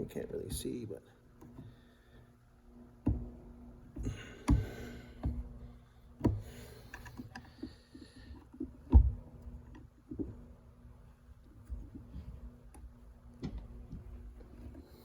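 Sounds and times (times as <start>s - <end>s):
faint steady hum: 0.0s - 15.0s
knocks and clicks of parts: 2.9s - 10.6s, 11.4s - 14.8s.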